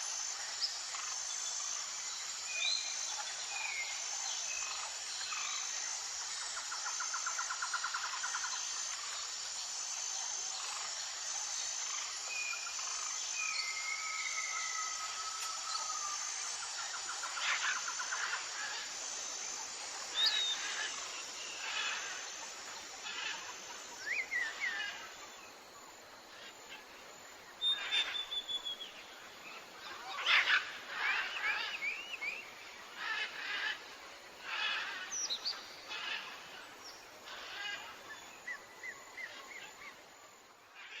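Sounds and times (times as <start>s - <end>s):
background hiss: 0.0s - 41.0s
insect pulsing trill: 0.3s - 25.5s
wild birds calling: 29.6s - 40.0s.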